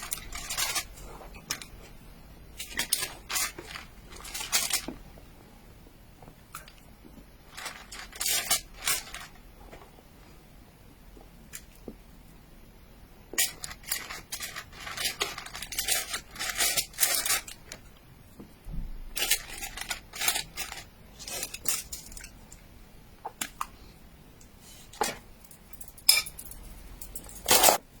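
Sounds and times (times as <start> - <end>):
utensils clattering and scraping: 0.0 - 1.7, 2.6 - 4.9, 7.5 - 9.3, 13.4 - 17.6, 19.2 - 22.4, 24.8 - 27.8.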